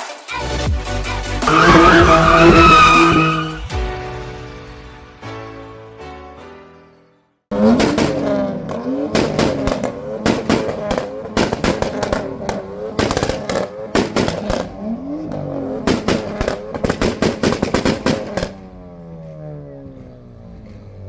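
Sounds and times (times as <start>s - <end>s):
car engine revving: 1.2s - 3.7s, 7.5s - 21.0s
exhaust pops and crackles: 1.4s - 3.7s, 7.5s - 21.0s.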